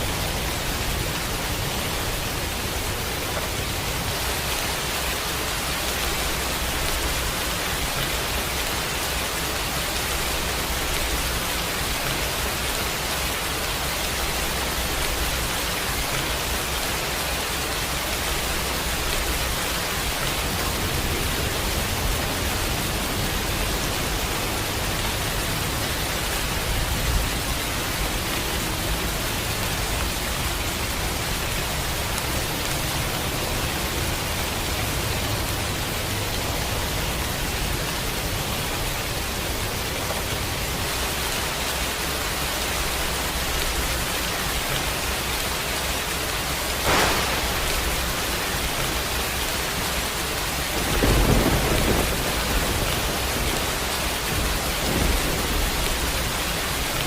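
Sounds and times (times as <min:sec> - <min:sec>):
steady rain: 0:00.0 - 0:57.0
thunder crack: 0:46.8 - 0:49.2, 0:50.7 - 0:53.6
deep rumble of thunder: 0:46.9 - 0:49.1, 0:50.7 - 0:57.0.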